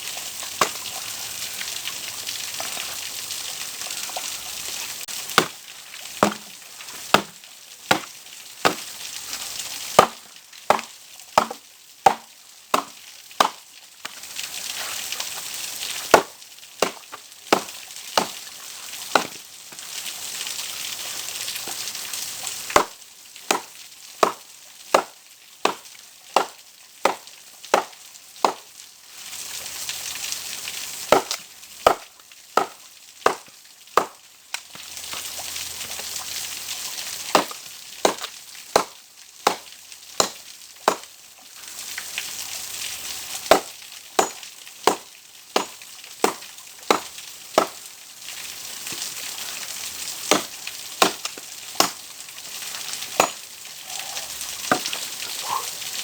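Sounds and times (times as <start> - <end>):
wood being chopped: 5.4 - 5.6, 6.2 - 6.5, 7.1 - 8.9, 10.0 - 14.2, 16.1 - 18.4, 19.1 - 19.4, 23.5 - 25.8, 26.4 - 28.6, 31.1 - 34.2, 37.3 - 41.1, 43.5 - 47.8, 50.3 - 52.0, 53.2 - 53.4, 54.7 - 54.9.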